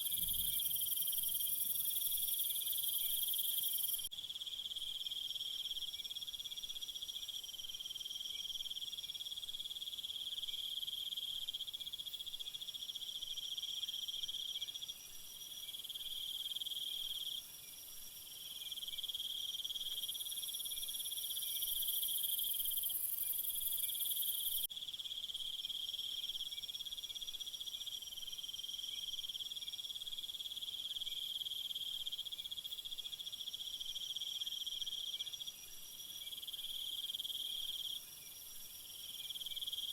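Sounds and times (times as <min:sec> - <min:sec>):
crickets trilling: 0:00.0 - 0:04.5.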